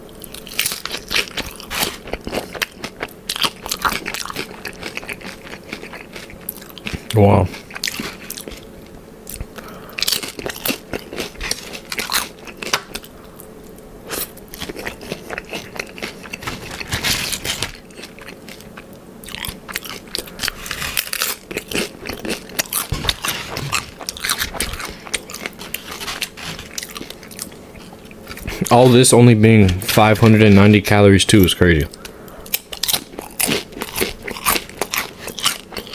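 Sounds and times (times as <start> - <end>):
soft chewing: 0.1 - 29.0, 31.9 - 35.9
crunching chips: 0.2 - 8.7, 9.3 - 13.5, 14.1 - 31.0, 32.0 - 35.9.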